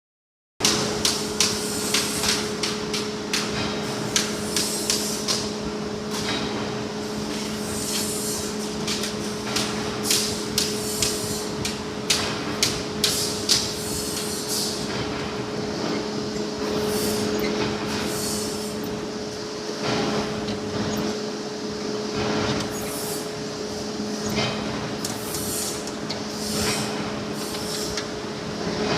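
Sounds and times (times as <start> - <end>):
steady machine hum: 0.6 - 28.9
spot welder snapping: 7.8 - 15.4
welding hiss: 10.0 - 14.9, 17.9 - 19.0, 25.1 - 28.0.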